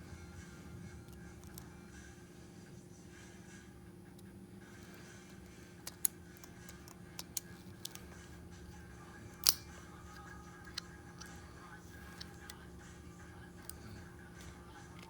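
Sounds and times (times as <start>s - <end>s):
faint steady hum: 0.0s - 15.0s
repair tools clicking and tapping: 4.8s - 8.4s, 9.3s - 15.0s.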